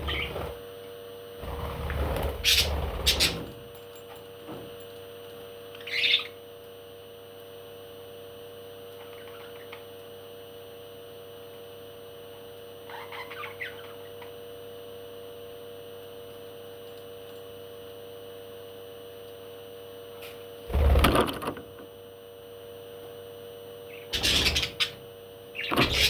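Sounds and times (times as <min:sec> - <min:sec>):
parrot chirping: 0:00.0 - 0:00.5, 0:12.9 - 0:14.0, 0:23.9 - 0:25.0
electrical hum: 0:00.0 - 0:26.0.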